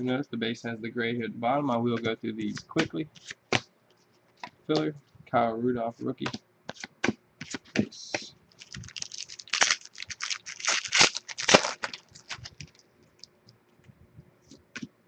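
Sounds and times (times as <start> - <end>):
foil wrapper crinkling: 8.6 - 13.4.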